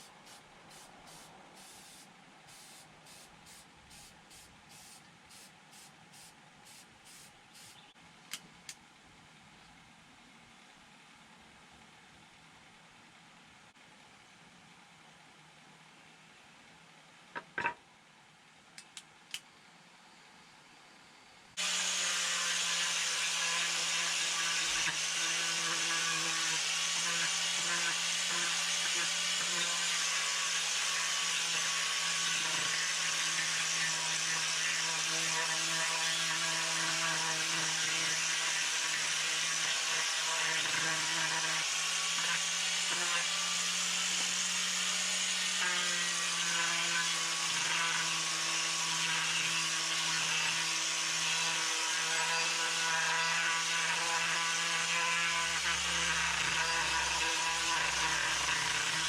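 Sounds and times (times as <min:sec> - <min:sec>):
power tool whining on wood: 0:21.6 - 0:59.0.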